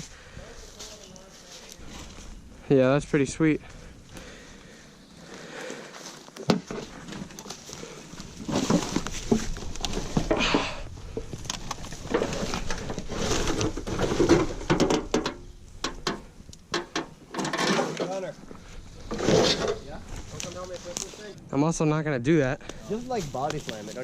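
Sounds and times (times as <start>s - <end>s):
rustling in dry leaves: 0.0s - 14.6s, 18.0s - 21.4s, 22.8s - 24.0s
irregular clicks and knocks: 8.6s - 18.1s.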